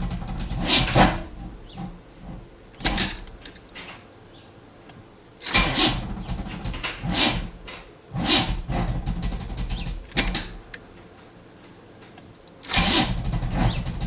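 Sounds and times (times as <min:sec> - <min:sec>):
car starter motor cranking: 0:00.0 - 0:03.9, 0:05.4 - 0:10.9, 0:12.6 - 0:14.0.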